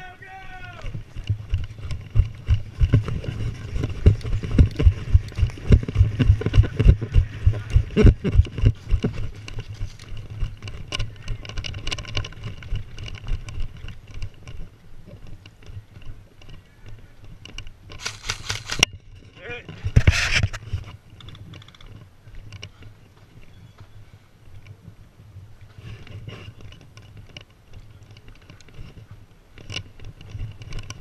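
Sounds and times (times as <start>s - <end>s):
running footfalls: 0.5s - 14.7s.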